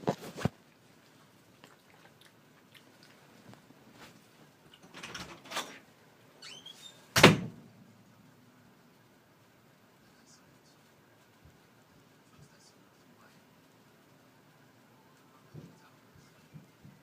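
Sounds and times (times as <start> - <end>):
short squeak: 6.4 - 7.1
loud thump: 7.2 - 7.6.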